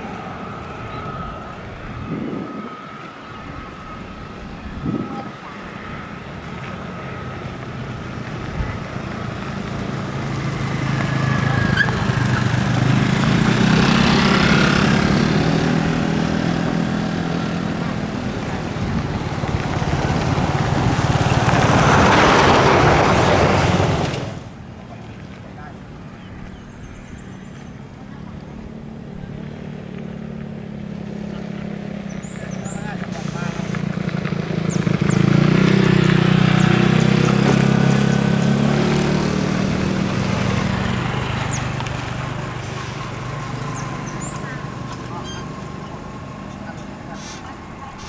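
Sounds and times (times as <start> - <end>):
jet airliner engine roar: 0.0 - 24.8.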